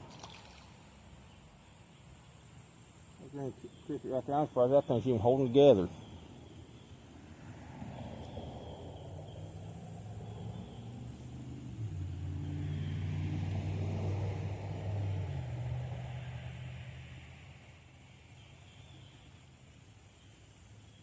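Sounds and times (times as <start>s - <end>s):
vehicle engine passing: 7.3s - 18.0s.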